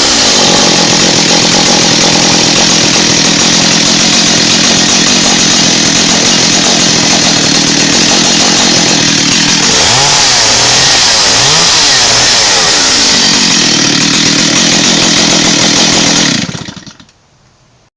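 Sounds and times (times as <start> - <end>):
chainsaw engine running fast: 0.0 - 17.1.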